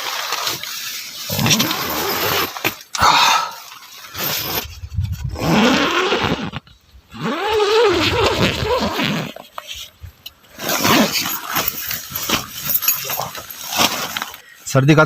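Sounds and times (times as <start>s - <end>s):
sleeping bag fabric rustling: 1.2s - 2.7s, 7.2s - 14.4s.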